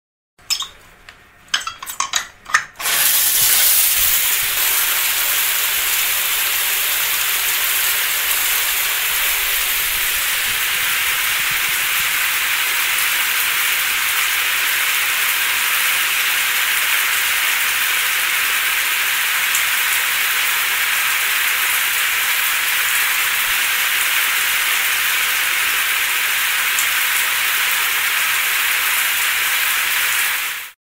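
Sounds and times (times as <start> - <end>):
shower handle clicks: 0.5 - 0.8, 1.5 - 2.8
shower water running: 1.5 - 30.8.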